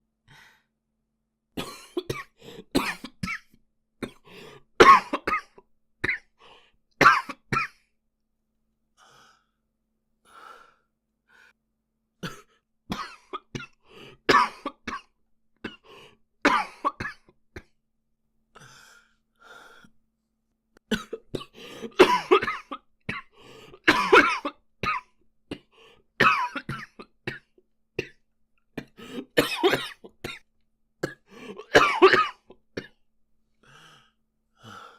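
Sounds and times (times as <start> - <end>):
boy coughing: 1.6 - 4.2, 4.8 - 6.3, 16.5 - 17.3, 20.9 - 25.0, 28.8 - 30.4, 31.0 - 32.9.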